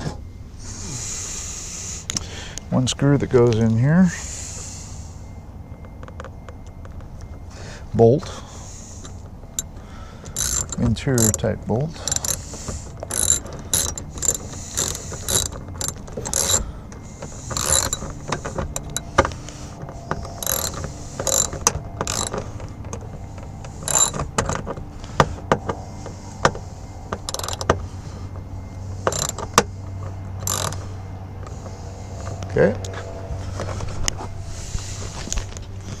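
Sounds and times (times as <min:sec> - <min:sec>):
hand ratchet clicking: 0:09.5 - 0:27.8, 0:29.0 - 0:30.8.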